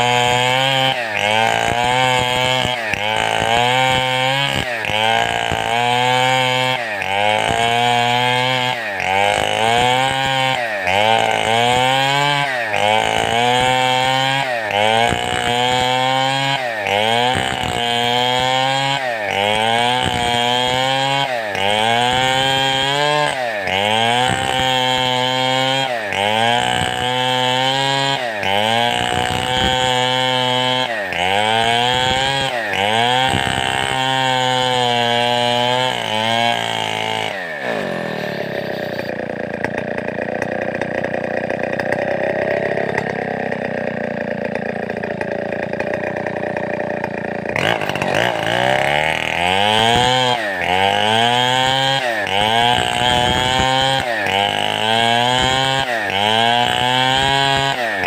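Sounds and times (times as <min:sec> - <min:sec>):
chainsaw engine revving: 0:00.0 - 0:58.0.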